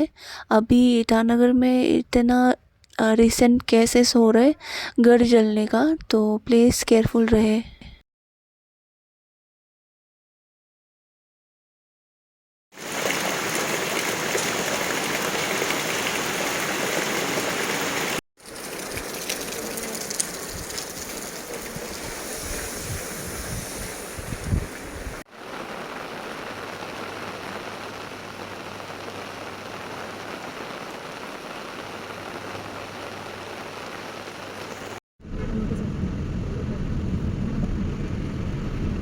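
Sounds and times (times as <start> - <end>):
steady rain falling: 12.8 - 35.0.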